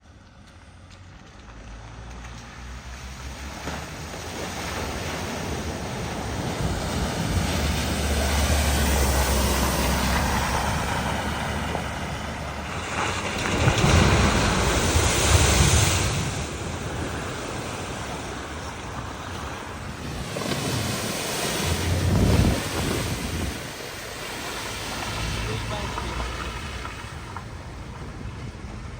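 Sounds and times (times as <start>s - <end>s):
low engine rumble: 0.0s - 28.9s
floodwater rushing and splashing: 1.7s - 28.9s
wind on microphone: 4.2s - 28.9s.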